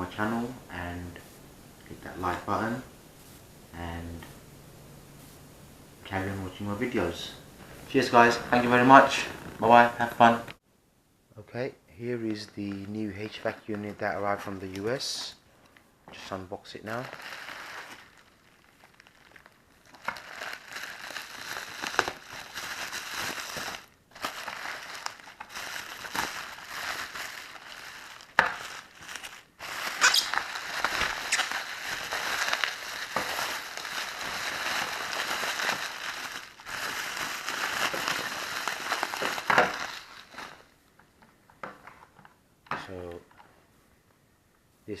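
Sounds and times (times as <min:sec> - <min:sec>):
packaging crinkling and rustling: 0:12.3 - 0:40.8.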